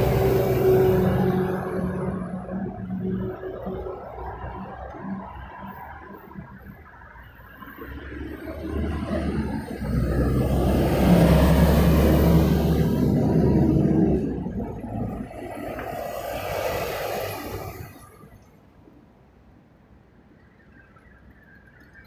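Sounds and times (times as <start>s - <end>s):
vehicle passing by: 0.0s - 5.7s, 8.0s - 18.3s
distant traffic: 0.0s - 19.1s.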